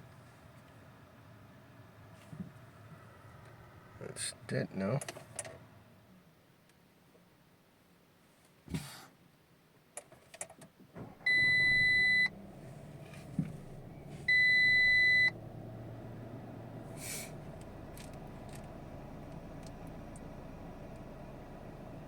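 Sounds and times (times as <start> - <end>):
thump: 8.7 - 9.0, 13.1 - 14.3
steady low hum: 11.1 - 22.0
long warning beeps: 11.3 - 12.4, 14.3 - 15.4.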